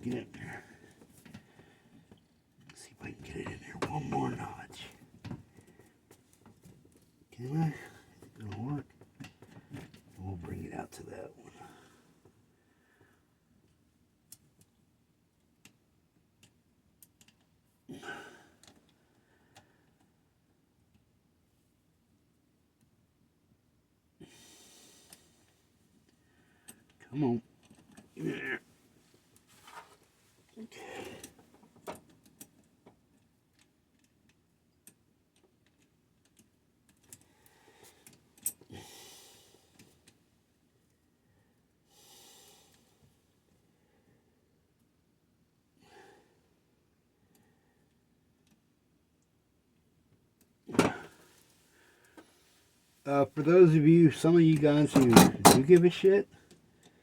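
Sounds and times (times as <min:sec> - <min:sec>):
small parts and tools clicking: 0:31.2 - 0:37.3.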